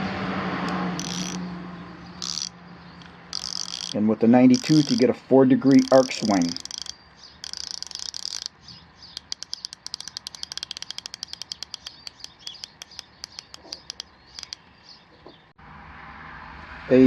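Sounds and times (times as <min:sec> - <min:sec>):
ratchet clicking: 0:00.7 - 0:01.4, 0:02.2 - 0:14.6.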